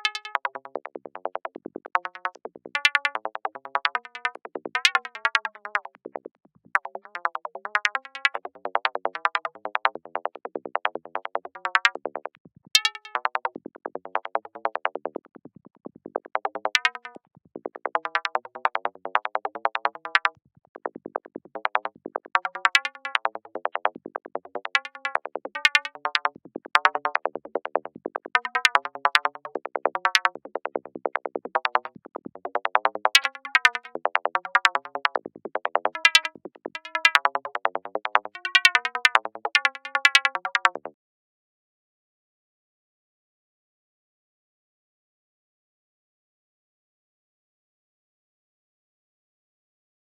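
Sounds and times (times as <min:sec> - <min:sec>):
plucked electronic synth notes: 0:16.4 - 0:17.2, 0:18.0 - 0:20.3, 0:21.6 - 0:23.9, 0:24.5 - 0:40.9.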